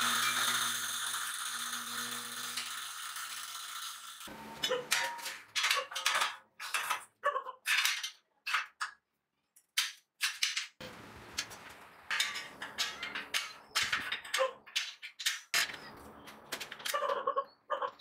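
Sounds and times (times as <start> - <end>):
metal clanks and knocks: 11.4 - 17.1.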